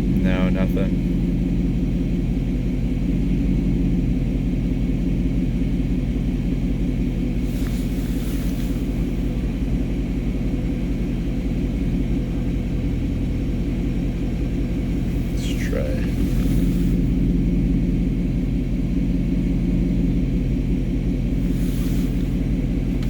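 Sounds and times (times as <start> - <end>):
car engine idling: 0.0 - 23.0
brief hiss: 7.5 - 9.0.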